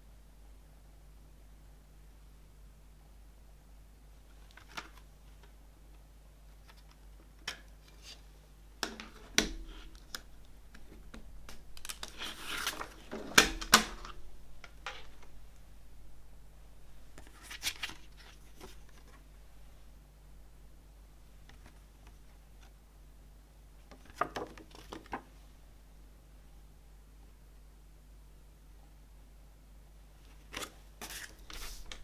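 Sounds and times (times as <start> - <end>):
rustling scrape: 11.9 - 13.4, 30.6 - 32.0.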